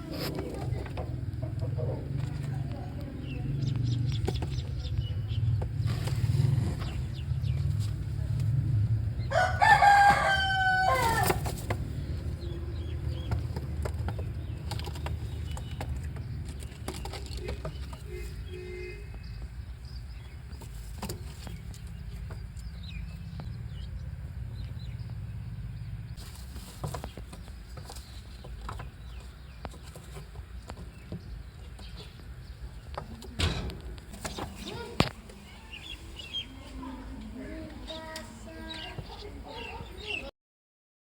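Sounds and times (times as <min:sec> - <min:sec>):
rooster crowing: 0:09.3 - 0:11.4.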